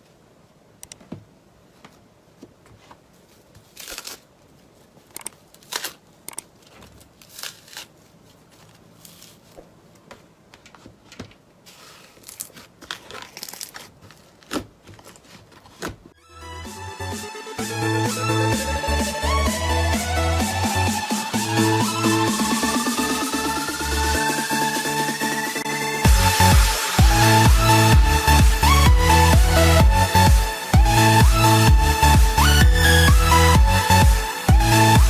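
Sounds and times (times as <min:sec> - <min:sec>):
crunchy material crackling: 0:03.1 - 0:09.7, 0:11.6 - 0:16.1.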